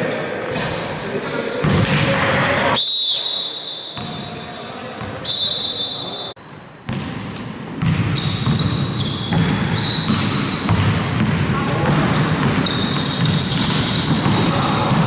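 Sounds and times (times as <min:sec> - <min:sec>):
players' voices: 0:00.0 - 0:06.4, 0:11.2 - 0:15.0
sneakers squeaking on court: 0:03.9 - 0:15.0
basketball bouncing on court: 0:06.9 - 0:15.0.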